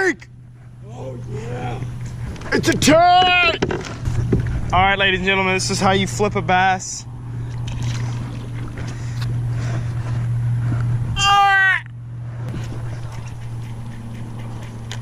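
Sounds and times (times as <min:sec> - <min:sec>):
low hum: 0:00.0 - 0:15.0
person whooping: 0:11.2 - 0:11.9.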